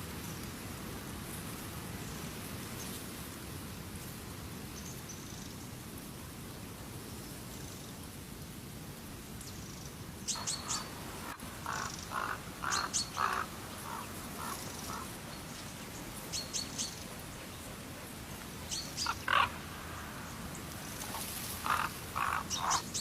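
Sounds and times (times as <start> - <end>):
birds chirping: 10.3 - 23.0.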